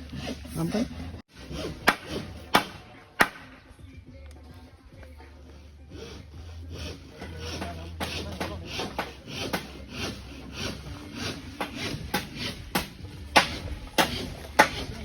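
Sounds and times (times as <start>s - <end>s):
sharp knocks on a beam: 11.6s - 14.8s.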